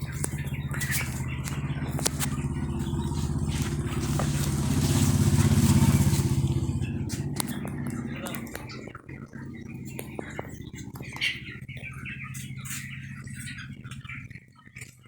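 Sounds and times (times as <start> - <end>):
engine running with low pulsing: 0.0 - 15.0.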